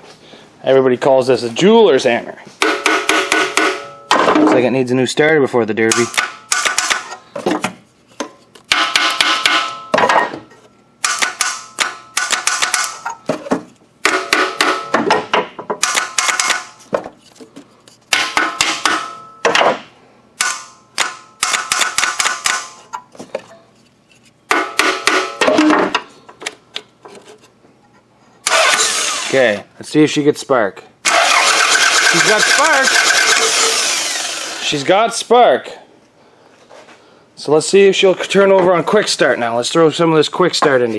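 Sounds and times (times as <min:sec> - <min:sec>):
small hammer tapping metal: 0:05.9 - 0:07.1, 0:11.0 - 0:13.1.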